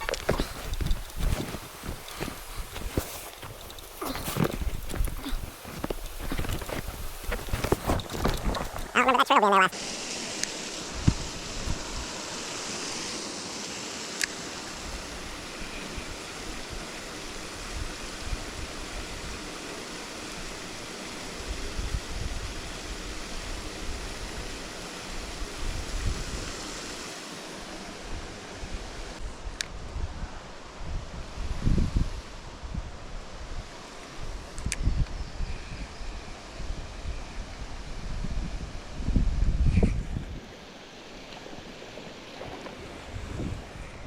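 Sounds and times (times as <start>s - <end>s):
wind buffeting on microphone: 0.0s - 9.0s, 28.7s - 40.5s, 42.4s - 44.0s
flowing river water: 40.4s - 44.0s.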